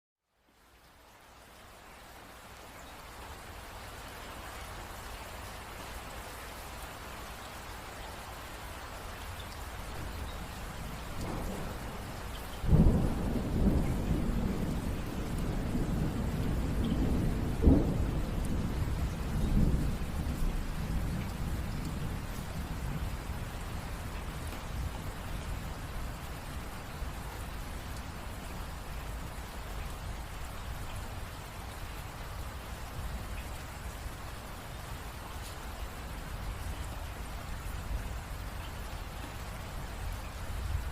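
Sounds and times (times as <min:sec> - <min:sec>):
steady rain falling: 0:00.2 - 0:40.9
thunder rumbling and cracking: 0:11.2 - 0:23.1.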